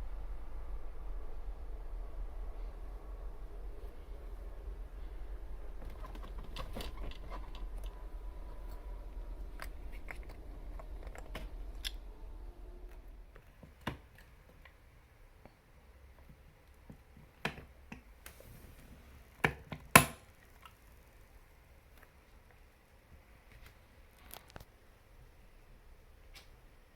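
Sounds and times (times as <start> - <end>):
low hum: 0.0 - 14.4.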